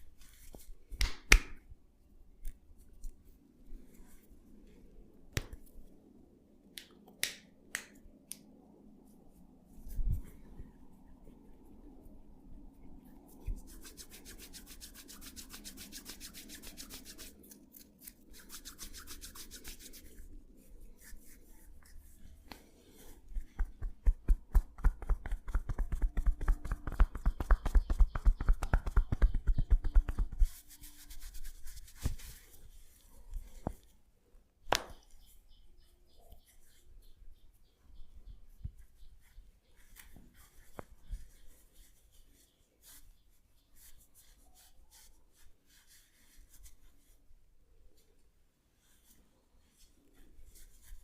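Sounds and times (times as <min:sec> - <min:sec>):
hands rubbing through hair: 0:00.0 - 0:01.6, 0:07.8 - 0:33.9, 0:38.8 - 0:47.3, 0:48.8 - 0:51.0.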